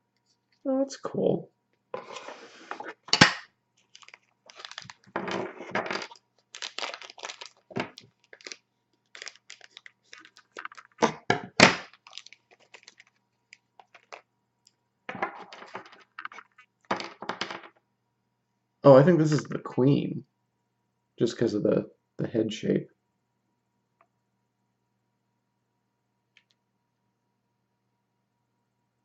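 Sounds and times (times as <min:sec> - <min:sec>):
packaging crackling and rustling: 0:03.8 - 0:14.3, 0:15.2 - 0:17.2.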